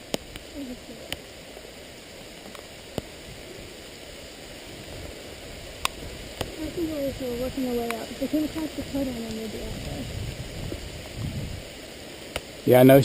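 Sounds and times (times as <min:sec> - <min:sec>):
steady rain falling: 0:00.0 - 0:13.0
sharp ticks: 0:07.7 - 0:09.9.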